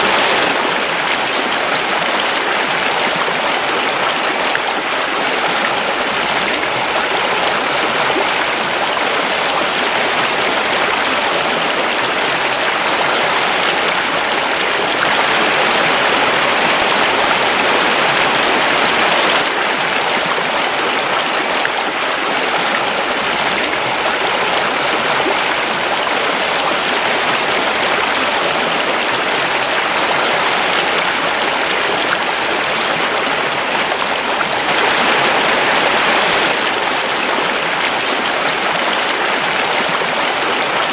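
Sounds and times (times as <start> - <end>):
river water over rocks: 0.0 - 40.9.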